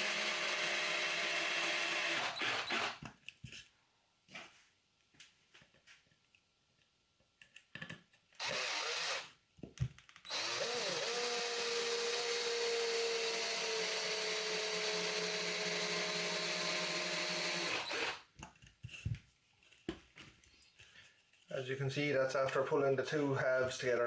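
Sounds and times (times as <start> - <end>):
power drill driving a screw: 0.0 - 3.0, 8.4 - 9.3, 10.2 - 18.2.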